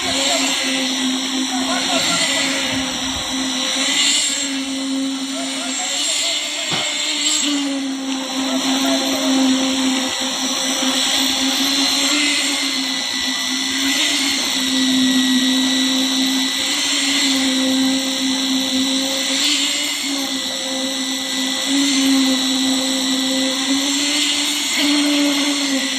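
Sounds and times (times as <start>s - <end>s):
small motor humming: 0.0s - 25.9s.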